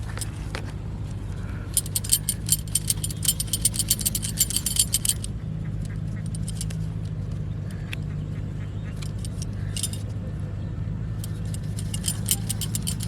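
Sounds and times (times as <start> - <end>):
metallic jingling and clicking: 0.0 - 0.7, 1.7 - 7.0, 9.0 - 10.1, 11.1 - 13.0
steady low hum: 0.0 - 13.0.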